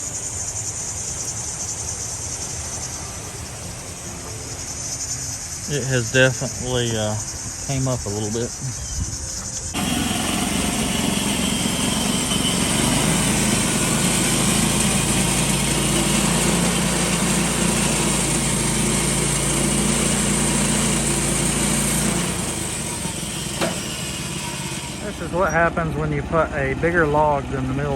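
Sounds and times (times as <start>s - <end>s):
band saw blade hissing: 0.0s - 26.0s
small gasoline engine running: 9.6s - 27.9s.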